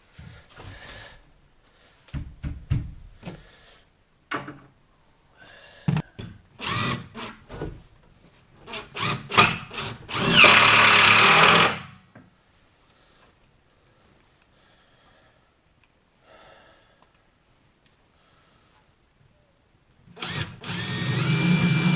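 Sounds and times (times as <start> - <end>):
power drill driving screws: 6.6 - 7.4, 8.7 - 12.0, 20.2 - 21.9.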